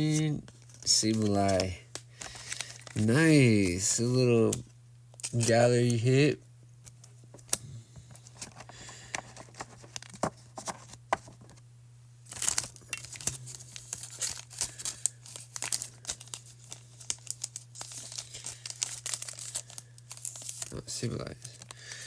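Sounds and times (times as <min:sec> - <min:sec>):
foil wrapper crinkling and tearing: 0:00.0 - 0:04.0, 0:12.3 - 0:22.0
steady low hum: 0:00.0 - 0:22.0.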